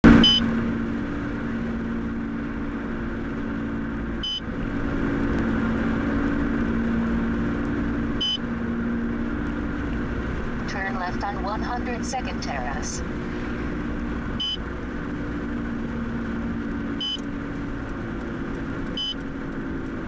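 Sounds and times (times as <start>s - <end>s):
car road and engine rumble: 0.0s - 20.0s
short high beep: 0.1s - 0.4s.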